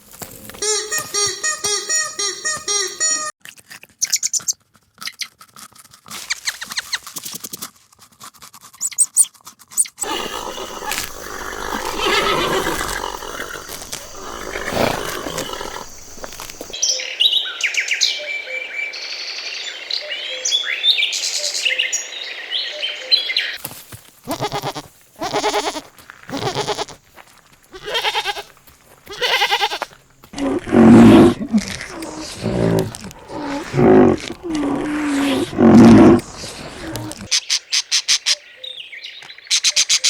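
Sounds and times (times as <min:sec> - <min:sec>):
farm animal sounds: 0:00.2 - 0:03.3, 0:08.8 - 0:16.8, 0:24.2 - 0:37.4.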